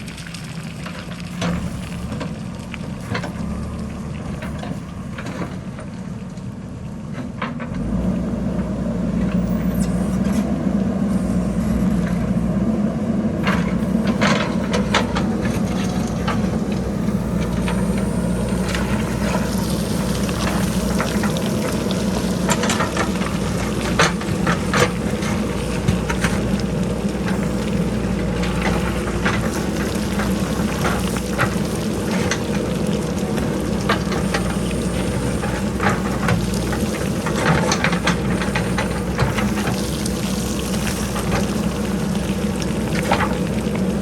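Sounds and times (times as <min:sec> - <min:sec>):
diesel engine running: 0:00.0 - 0:44.0
rocks clattering down hillside: 0:13.4 - 0:44.0.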